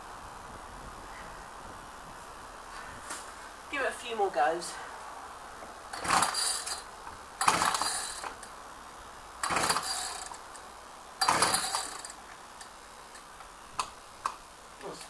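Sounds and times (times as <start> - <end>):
engine pull-starter rasping: 5.9 - 8.5, 9.4 - 10.4, 11.2 - 12.2.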